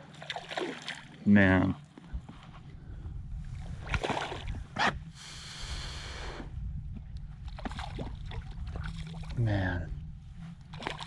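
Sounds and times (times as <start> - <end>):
water splashing: 0.0 - 1.2, 3.8 - 4.6, 7.4 - 9.7, 10.6 - 11.0
steady low rumble: 1.4 - 11.0.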